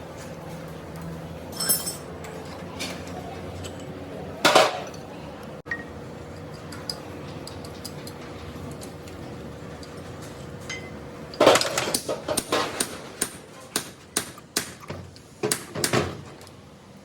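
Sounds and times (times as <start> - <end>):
metal parts clinking: 1.5 - 2.1.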